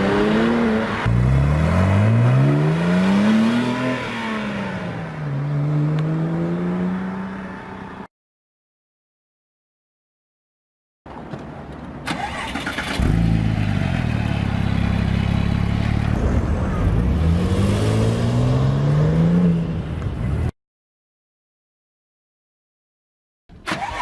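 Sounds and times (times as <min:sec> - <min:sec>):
engine cranking: 0:12.1 - 0:13.2.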